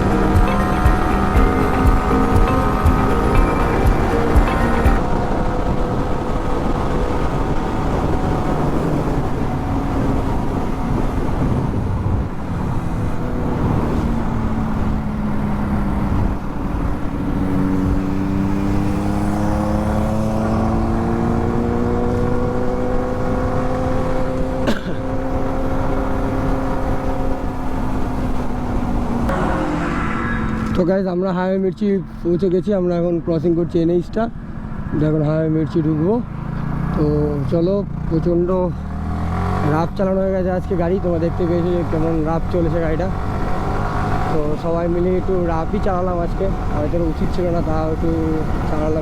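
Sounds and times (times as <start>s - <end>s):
motorcycle engine running: 0.0s - 29.8s
wind and road noise: 0.0s - 49.0s.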